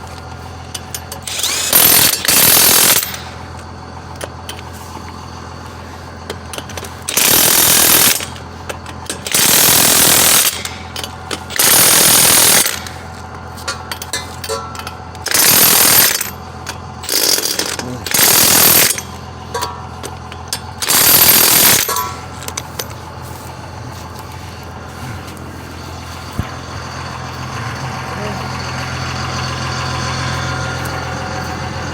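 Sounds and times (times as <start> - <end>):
impact wrench hammering: 0.8 - 3.3, 6.5 - 13.0, 13.6 - 23.0
low hum: 18.8 - 31.9.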